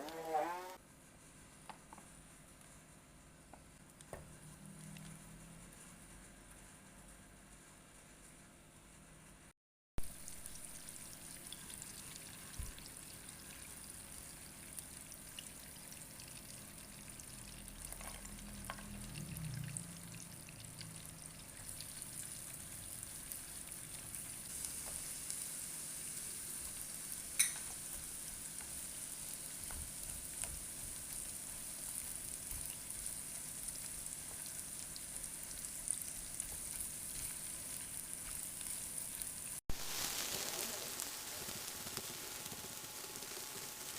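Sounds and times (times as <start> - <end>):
food sizzling in a pan: 10.0 - 43.9.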